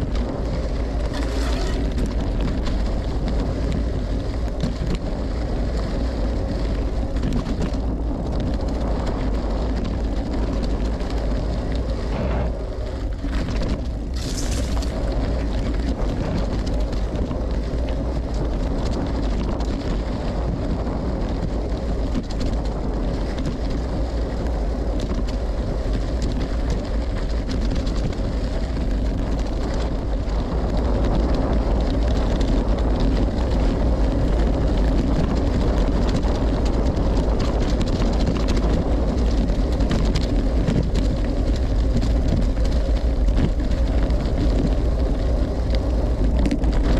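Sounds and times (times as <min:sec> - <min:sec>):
bike tyres rolling over dirt: 0:00.0 - 0:46.9
wind buffeting microphone: 0:00.0 - 0:46.9
clicks and rattles from stones: 0:07.1 - 0:20.1.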